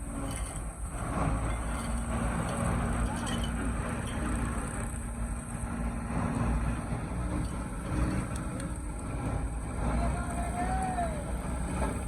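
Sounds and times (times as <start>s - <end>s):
heavy vehicle engine rumbling: 0.0s - 12.0s
road-works machinery noise: 0.0s - 12.0s.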